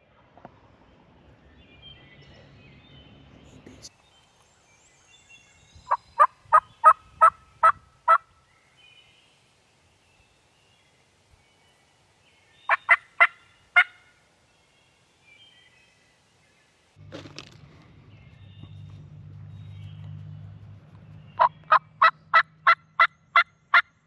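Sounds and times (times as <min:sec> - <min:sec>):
turkey gobbling: 0:05.9 - 0:08.2, 0:12.7 - 0:14.0, 0:21.4 - 0:23.9.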